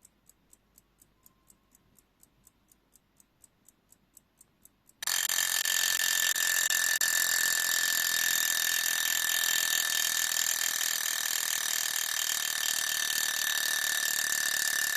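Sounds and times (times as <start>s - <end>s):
alarm clock bell ringing: 5.0s - 14.9s.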